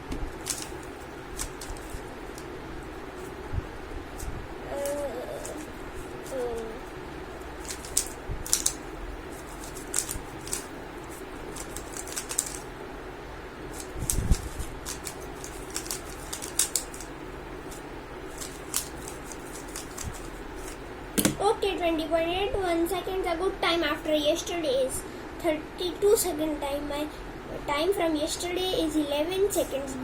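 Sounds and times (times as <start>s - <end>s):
background hum: 0.0s - 30.0s
plastic puzzle cube clicks: 0.4s - 0.7s, 7.6s - 8.8s, 11.6s - 12.6s, 14.9s - 17.1s, 18.4s - 20.2s.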